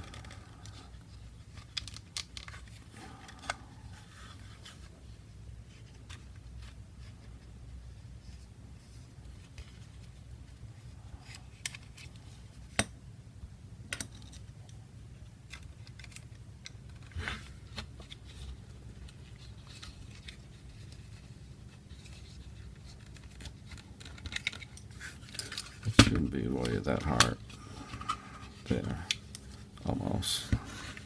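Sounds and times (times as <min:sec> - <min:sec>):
faint steady hum: 0:00.0 - 0:31.0
small plastic parts clicking: 0:01.5 - 0:03.6.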